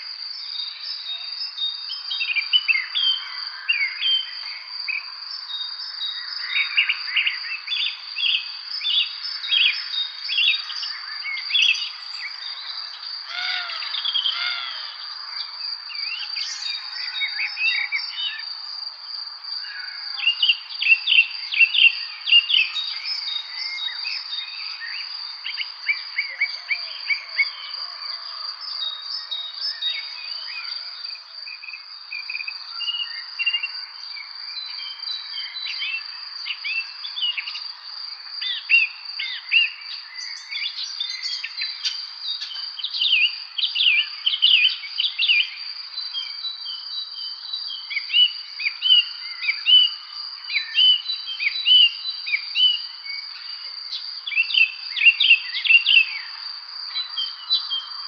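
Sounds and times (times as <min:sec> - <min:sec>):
birds chirping and singing: 0:08.2 - 0:18.9.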